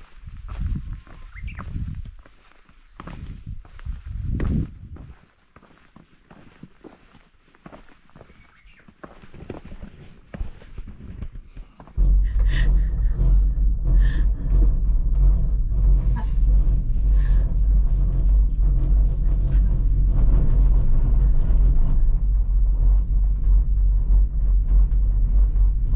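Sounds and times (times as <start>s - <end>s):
loud low rumble: 0.0s - 2.2s, 3.0s - 5.2s, 12.0s - 25.9s.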